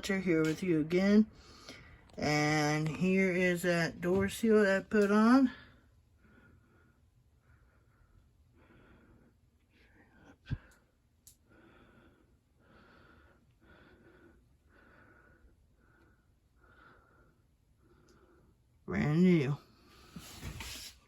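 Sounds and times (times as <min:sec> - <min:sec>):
faint breathing: 0:01.3 - 0:02.2, 0:05.6 - 0:18.7.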